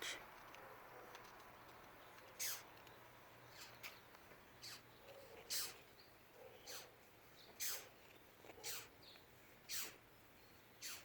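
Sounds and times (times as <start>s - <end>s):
insect squeaks: 2.4s - 2.7s, 3.5s - 3.9s, 4.6s - 4.9s, 5.5s - 5.8s, 6.6s - 6.9s, 7.6s - 7.9s, 8.6s - 9.0s, 9.7s - 10.0s, 10.8s - 11.0s.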